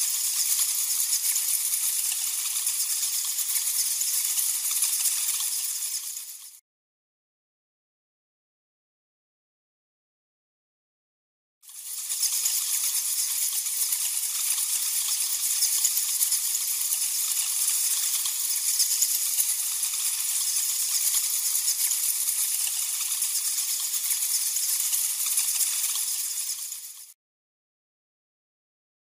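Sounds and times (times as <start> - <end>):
bats chittering and squeaking: 0.0 - 6.6, 11.7 - 27.2.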